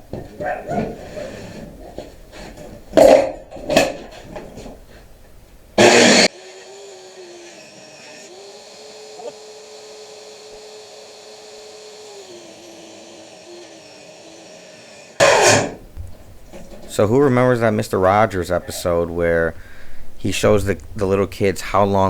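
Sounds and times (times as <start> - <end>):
electric saw cutting wood: 5.8 - 15.8.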